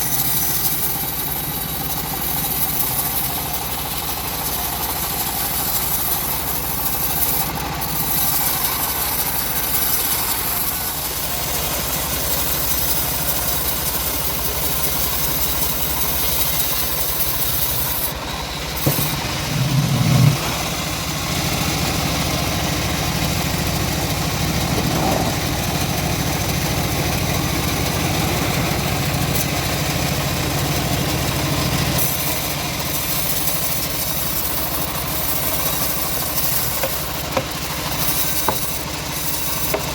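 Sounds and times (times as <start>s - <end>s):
engine-driven bandsaw sawing log: 0.0s - 39.9s
low hum: 18.8s - 20.8s.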